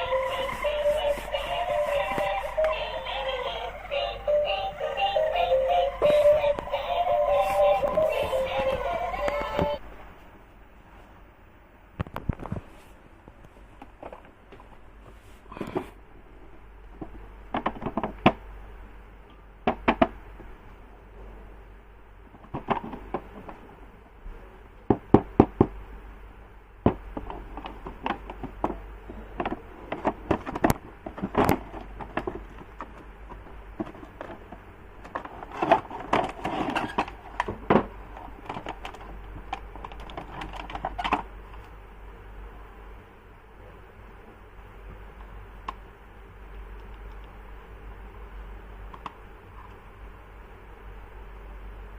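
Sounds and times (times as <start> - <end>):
objects being handled: 0.0 - 3.4
rustling and clattering: 22.3 - 23.7, 26.9 - 41.7.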